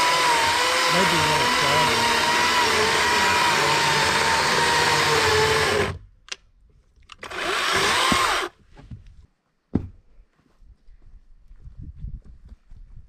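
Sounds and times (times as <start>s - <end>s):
electric saw cutting wood: 0.0s - 6.0s, 7.2s - 8.5s.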